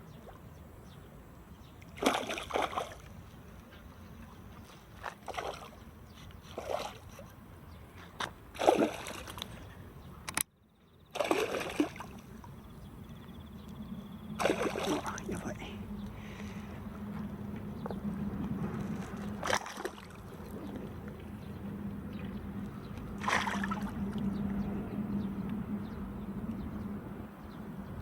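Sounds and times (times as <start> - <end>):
water splashing: 1.9 - 3.2, 5.0 - 5.8, 8.5 - 9.5, 11.1 - 12.6, 14.4 - 15.6, 18.6 - 21.4, 22.9 - 24.4.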